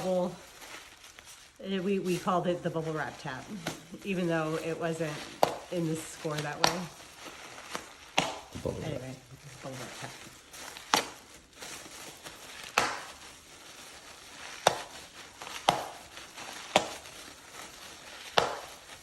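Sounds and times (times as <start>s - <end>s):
bubble wrap popping: 0.0s - 19.0s
plastic crinkling: 0.0s - 19.0s.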